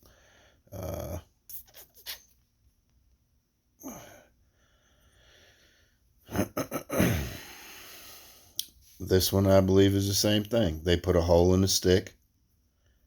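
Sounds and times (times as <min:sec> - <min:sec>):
person breathing: 0:00.0 - 0:00.7, 0:03.8 - 0:06.1, 0:07.1 - 0:08.6.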